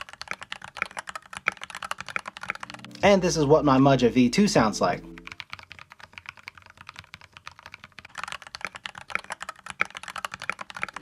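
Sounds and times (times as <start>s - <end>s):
typing on mechanical keyboard: 0.0s - 3.0s, 5.2s - 11.0s.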